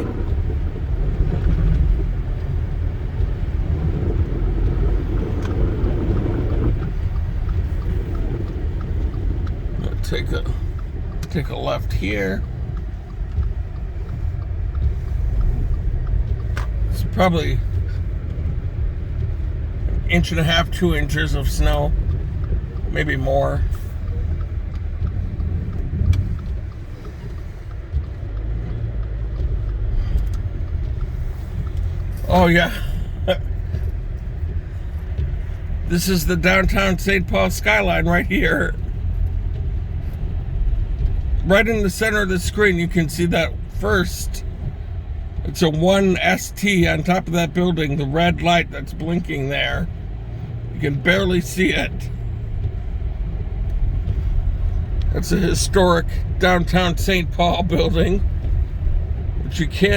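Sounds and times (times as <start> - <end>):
car engine and road rumble: 0.0 - 59.9
faint clicks: 0.0 - 59.9.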